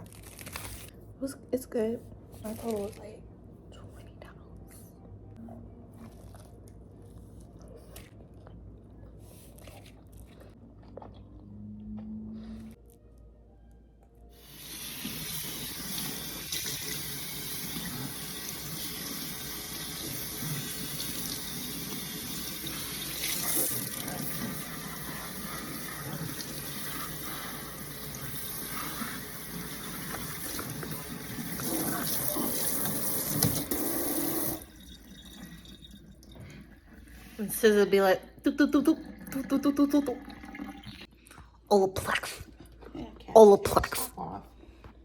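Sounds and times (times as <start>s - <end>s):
tap water running into sink: 14.5s - 36.4s.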